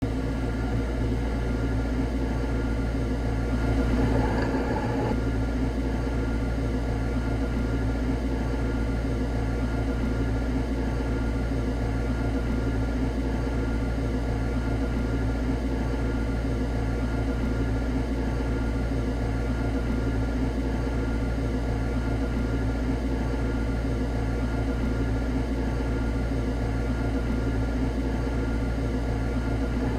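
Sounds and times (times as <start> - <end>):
cutting saw machine humming: 3.5 - 5.2.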